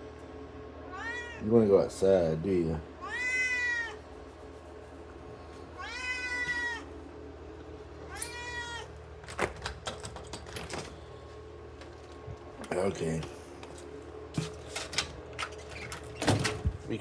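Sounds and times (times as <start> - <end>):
cat meowing: 0.9 - 1.4, 3.0 - 4.0, 5.8 - 6.9, 8.1 - 9.0
sharp clicks and knocks: 9.2 - 10.9.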